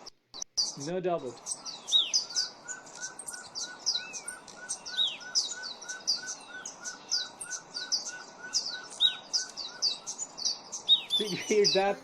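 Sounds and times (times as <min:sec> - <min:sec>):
small birds chipping and twittering: 0:00.0 - 0:12.0
owl giving hollow toots: 0:00.6 - 0:12.0.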